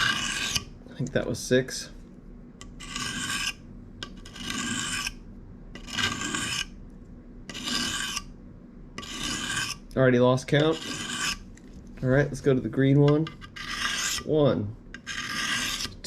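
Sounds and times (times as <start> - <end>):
knife scraping on sharpening stone: 0.0 - 0.7, 2.7 - 5.2, 5.8 - 6.7, 7.5 - 8.3, 9.0 - 9.8, 10.6 - 11.4, 13.1 - 14.3, 15.0 - 16.0.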